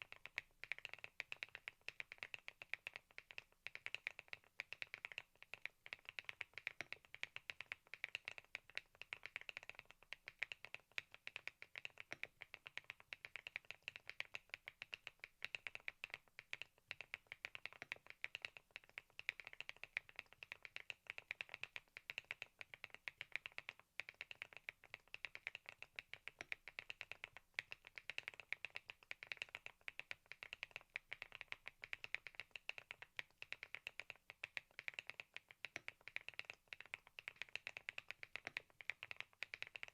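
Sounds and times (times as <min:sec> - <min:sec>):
fast mechanical keyboard typing: 0:17.0 - 0:39.9.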